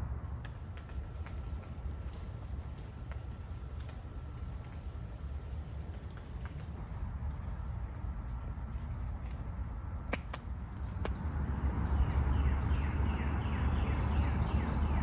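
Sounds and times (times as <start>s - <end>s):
low rumble: 10.6s - 15.0s
songbird singing: 10.6s - 15.0s.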